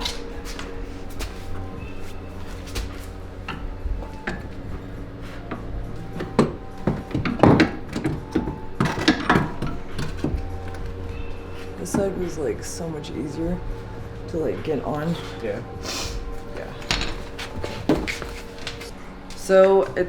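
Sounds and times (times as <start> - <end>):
metallic knocks and clanks: 0.0 - 12.8, 16.5 - 18.9.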